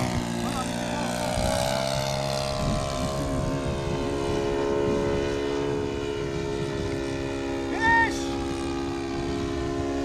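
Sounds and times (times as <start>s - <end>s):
model airplane engine running: 0.0s - 10.0s.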